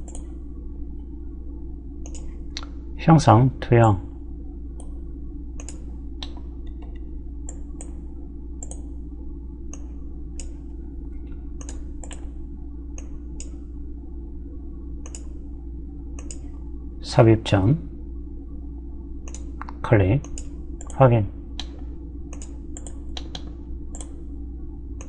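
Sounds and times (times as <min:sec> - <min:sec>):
computer mouse clicking: 0:00.0 - 0:00.3, 0:02.0 - 0:02.7, 0:05.6 - 0:08.0, 0:08.6 - 0:08.9, 0:09.7 - 0:10.6, 0:11.6 - 0:12.3, 0:15.0 - 0:15.4, 0:16.2 - 0:16.5, 0:19.2 - 0:21.0, 0:21.6 - 0:24.2
low electrical hum: 0:00.0 - 0:25.0.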